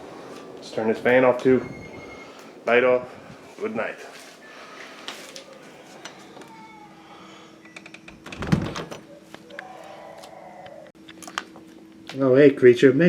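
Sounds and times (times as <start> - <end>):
faint steady hum: 0.0 - 8.4
door shutting with dull thud: 8.1 - 9.0.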